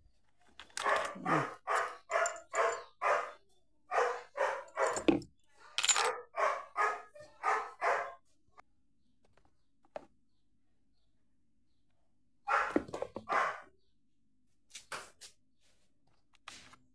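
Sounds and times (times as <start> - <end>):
dog barking: 0.8 - 5.2, 6.0 - 8.3, 12.4 - 13.8.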